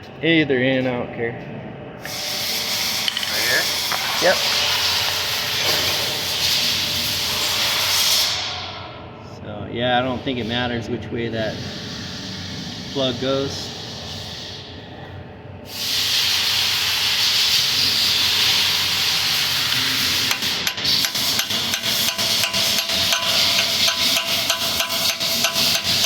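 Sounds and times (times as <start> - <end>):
loud steady hiss: 2.0 - 8.7, 10.0 - 14.8, 15.7 - 26.0
hammer tapping: 20.3 - 26.0.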